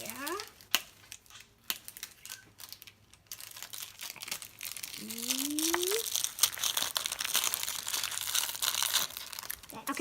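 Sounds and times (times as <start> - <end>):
plastic wrapping crinkling: 0.0 - 10.0.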